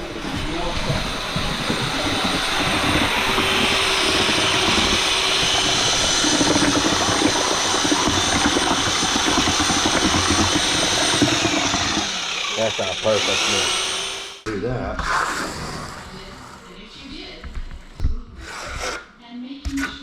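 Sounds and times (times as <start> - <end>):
power tool running: 0.0 - 14.4.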